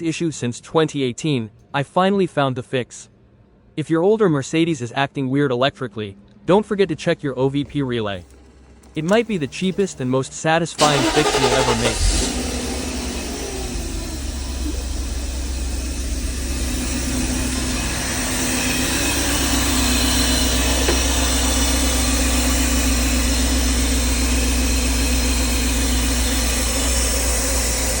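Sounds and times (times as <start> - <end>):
car engine idling: 7.6 - 28.0.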